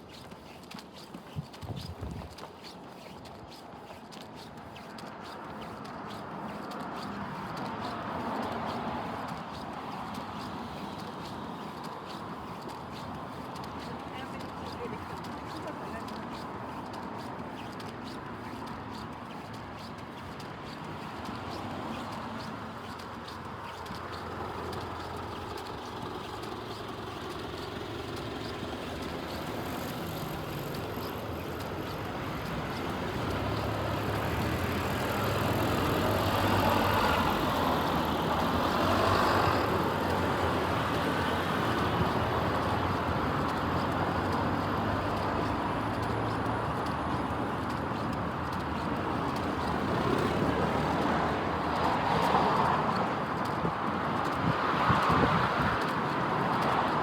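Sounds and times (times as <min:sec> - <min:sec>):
vehicle passing: 0:31.7 - 0:57.0.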